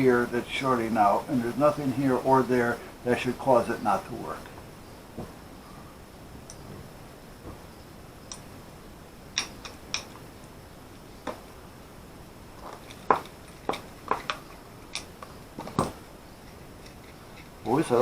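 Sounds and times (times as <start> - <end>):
small parts and tools clicking: 8.3 - 8.5, 9.3 - 10.6, 12.5 - 18.0.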